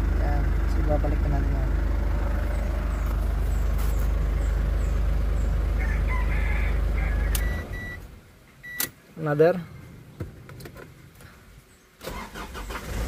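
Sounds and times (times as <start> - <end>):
diesel engine idling: 0.0 - 8.0
short beep: 7.4 - 8.0.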